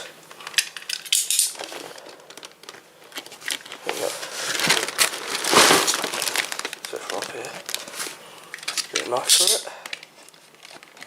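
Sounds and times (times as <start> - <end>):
cardboard scraping rustle: 3.6 - 8.2.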